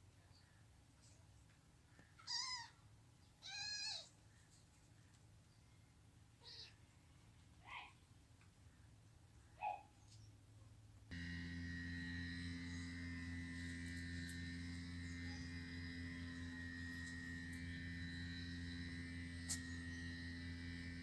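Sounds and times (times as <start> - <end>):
steady electrical hum: 11.1 - 21.0.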